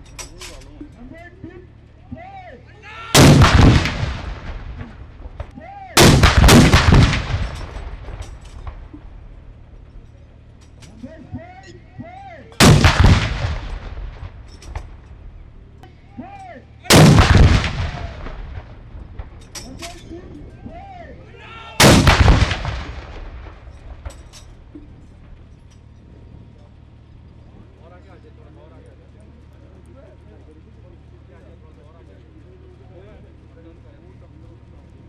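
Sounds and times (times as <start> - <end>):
cannon blasts with rumbling echo: 3.2 - 9.6, 12.6 - 15.5, 16.9 - 19.5, 21.8 - 25.4.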